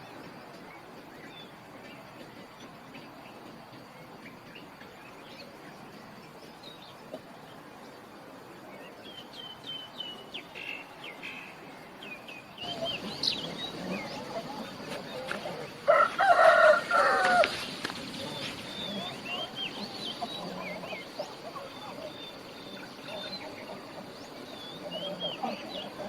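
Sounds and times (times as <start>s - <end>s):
small birds chirping: 8.8s - 26.0s
loud chicken call: 15.3s - 20.9s.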